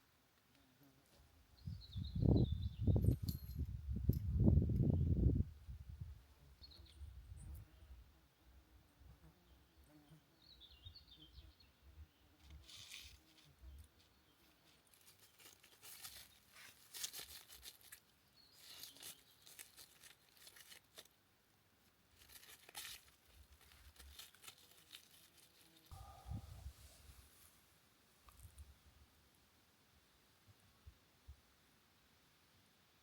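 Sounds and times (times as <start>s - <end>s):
bird chirp: 1.6s - 3.6s, 6.6s - 8.0s, 9.4s - 12.4s, 25.9s - 26.9s
rustling and crinkling: 12.4s - 21.2s, 21.8s - 28.7s.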